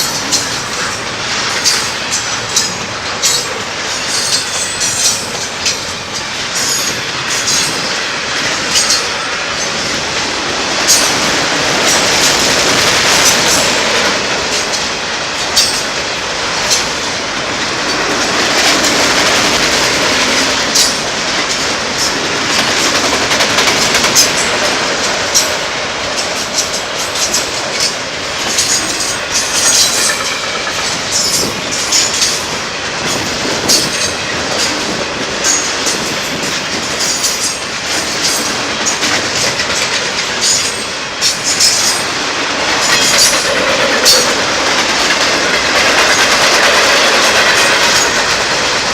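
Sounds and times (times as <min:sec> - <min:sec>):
train wheels rumbling on rail: 0:00.0 - 0:48.9
wheels clacking over rail joints: 0:00.0 - 0:48.9.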